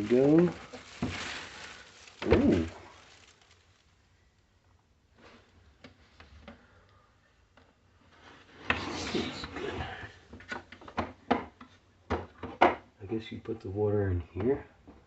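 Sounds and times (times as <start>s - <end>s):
packaging handling noise: 0.0s - 4.0s.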